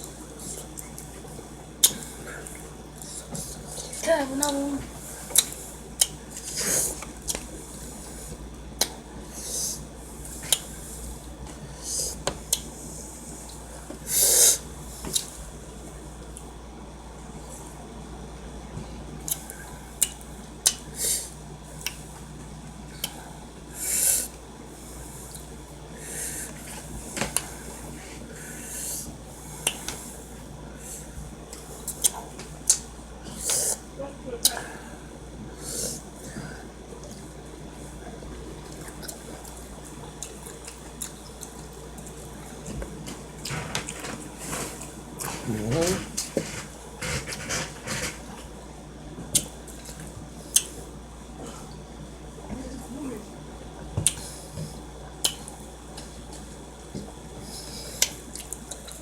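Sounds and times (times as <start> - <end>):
chewing and mouth smacking: 38.6 - 42.2, 55.2 - 57.1, 58.0 - 59.0.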